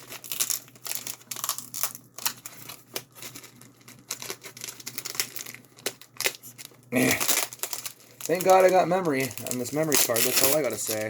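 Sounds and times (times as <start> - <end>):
packing tape ripping: 0.0 - 11.0
knife cutting cardboard package: 7.3 - 11.0.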